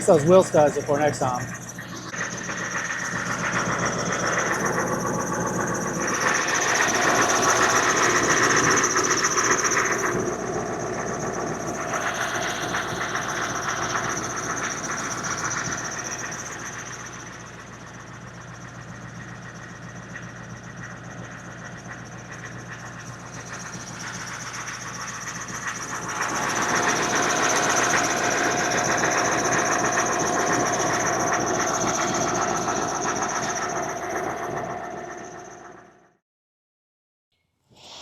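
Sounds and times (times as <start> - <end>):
high whine: 0.0 - 18.8
diesel engine running: 0.0 - 36.0.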